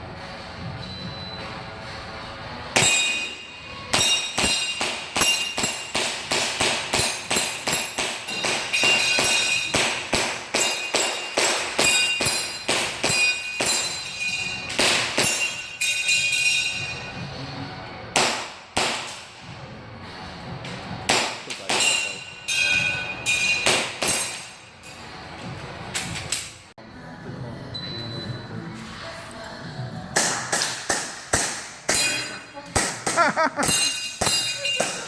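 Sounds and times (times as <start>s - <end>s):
metallic ping of steel targets: 2.8s - 17.1s, 33.2s - 35.0s.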